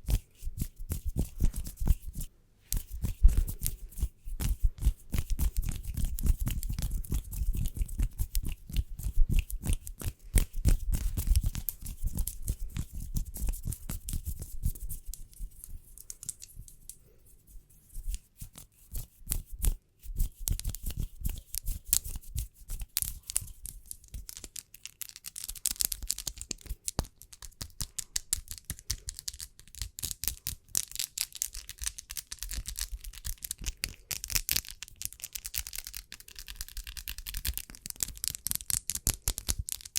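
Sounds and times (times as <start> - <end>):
hands rubbing: 0.0 - 29.4.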